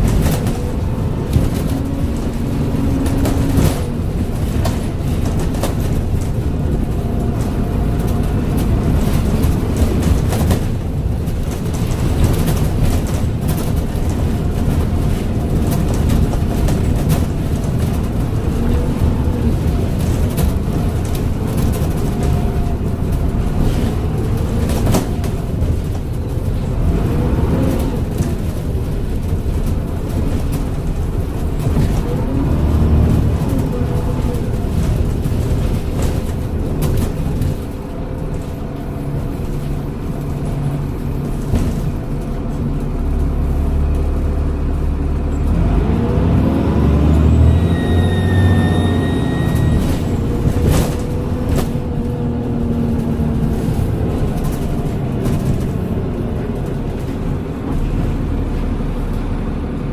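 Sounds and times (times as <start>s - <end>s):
bus diesel engine running: 0.0s - 59.9s
high-pitched turbo whistle: 47.5s - 49.9s.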